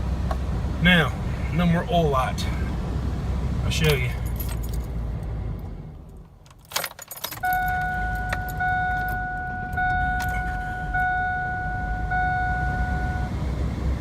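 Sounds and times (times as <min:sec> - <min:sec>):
car engine idling: 0:00.0 - 0:14.0
dashboard warning chime: 0:06.8 - 0:13.4.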